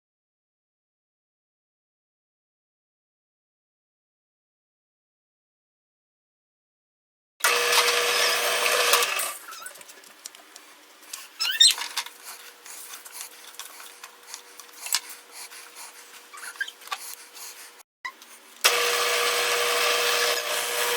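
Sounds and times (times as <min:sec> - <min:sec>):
power tool running: 0:07.4 - 0:09.4, 0:18.6 - 0:20.9.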